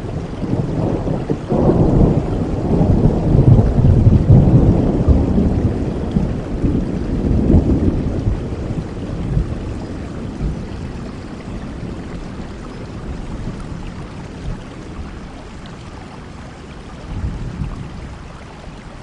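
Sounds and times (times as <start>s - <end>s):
deep roll of thunder: 0.0s - 15.4s, 17.0s - 18.2s
steady rain: 0.0s - 19.0s.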